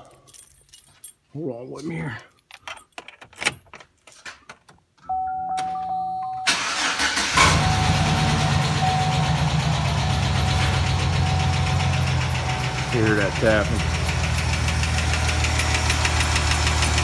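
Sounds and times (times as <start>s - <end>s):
keys clicking in ignition: 2.4s - 4.7s
dash warning tone: 5.1s - 6.6s, 7.4s - 14.0s
engine cranking and starting: 6.5s - 17.0s
engine idling with lifter tick: 13.8s - 17.0s.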